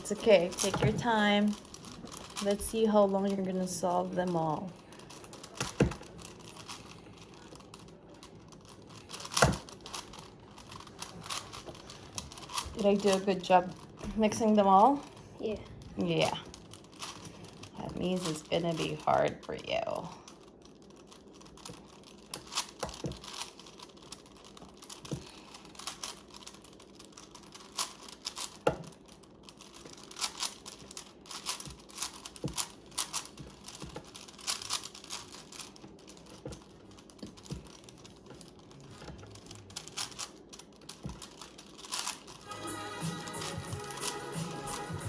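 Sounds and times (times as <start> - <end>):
puzzle cube layers clicking: 39.3 - 45.0.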